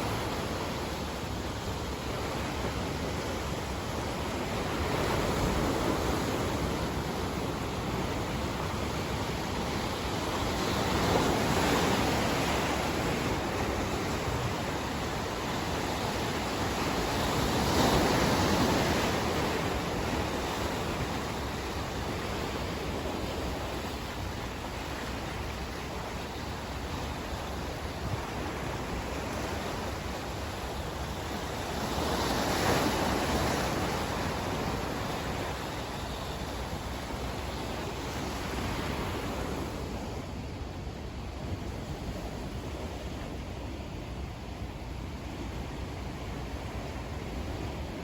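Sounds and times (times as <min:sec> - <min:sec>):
sea waves washing in: 0:00.0 - 0:48.0
waves breaking: 0:00.0 - 0:48.0.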